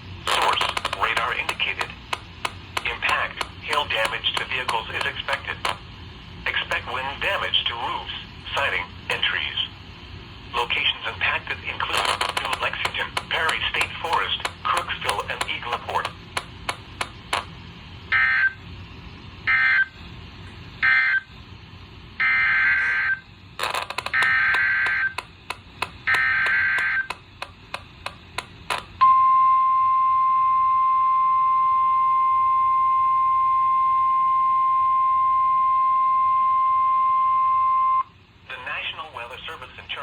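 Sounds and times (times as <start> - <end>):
clicks: 0.3 - 5.8, 12.0 - 17.5, 23.6 - 29.0
steady warning alarm tone: 0.3 - 5.8, 22.2 - 38.0
buzzy data bursts: 23.0 - 29.0.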